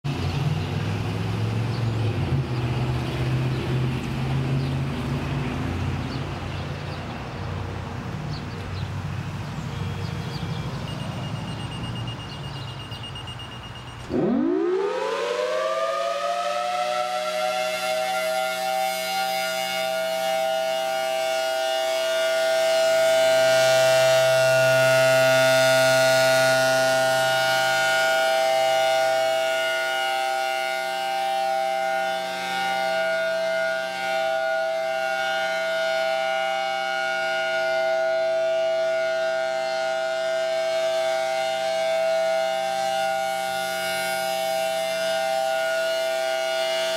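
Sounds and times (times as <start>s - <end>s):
warning siren wailing: 9.8s - 46.9s.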